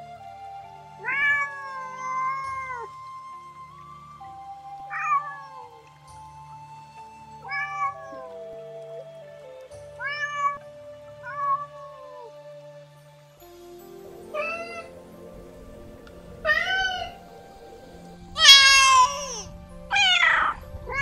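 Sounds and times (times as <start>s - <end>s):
background music: 0.0s - 21.0s
cat meowing: 1.0s - 2.9s, 7.5s - 8.3s, 10.0s - 10.6s, 14.4s - 14.9s, 16.4s - 17.2s, 18.4s - 20.6s.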